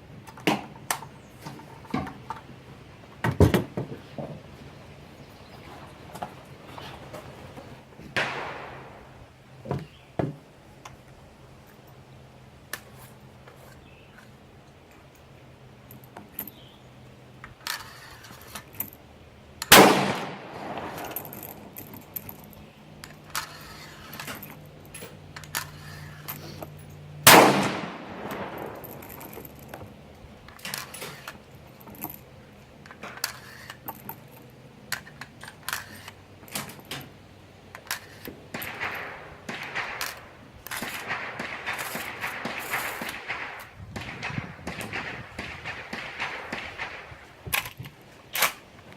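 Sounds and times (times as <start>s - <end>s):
rifle shots with ringing tail: 8.1s - 9.3s, 19.7s - 21.8s, 27.2s - 29.6s, 38.5s - 47.4s
small clicks and knocks: 20.8s - 27.0s, 28.2s - 48.9s.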